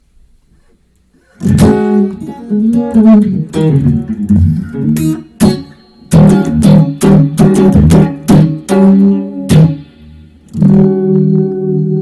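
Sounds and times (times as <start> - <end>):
electric guitar phrases and chords: 1.4 - 12.0.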